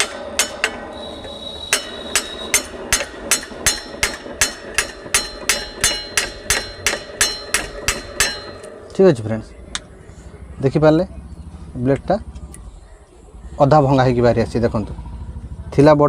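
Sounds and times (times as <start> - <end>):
hammer tapping metal: 0.0 - 8.8.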